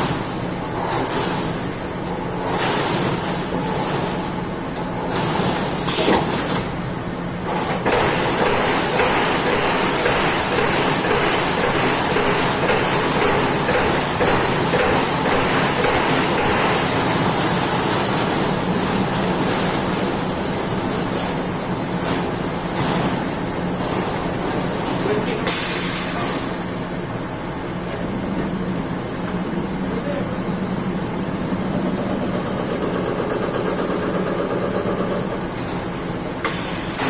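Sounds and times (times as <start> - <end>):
punch press punching sheet metal: 5.1 - 6.8, 7.6 - 17.2.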